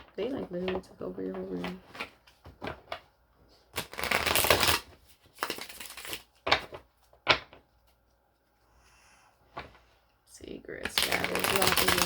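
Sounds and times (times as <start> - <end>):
cards riffling: 3.8 - 6.9.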